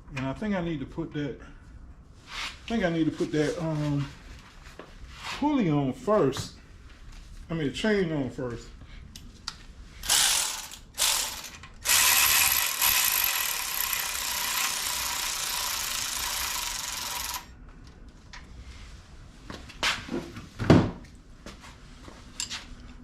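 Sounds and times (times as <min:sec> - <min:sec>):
ratchet wrench clicking: 0:10.0 - 0:17.5.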